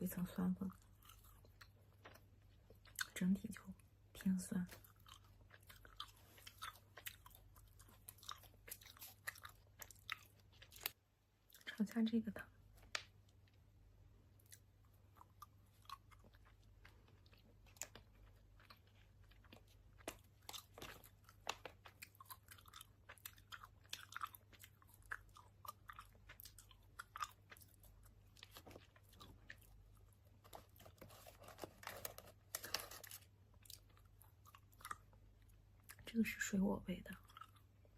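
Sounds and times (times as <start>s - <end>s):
person chewing gummy candy: 0.6s - 11.7s, 14.3s - 36.1s, 37.1s - 37.9s.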